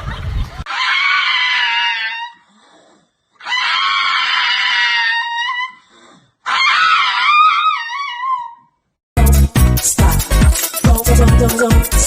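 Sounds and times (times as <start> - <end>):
animal screaming: 0.7 - 2.5, 3.4 - 8.8.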